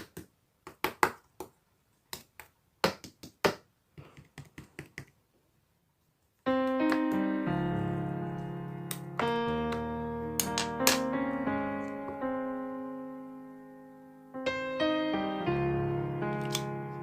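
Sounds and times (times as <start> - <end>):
piano music: 6.4 - 17.0.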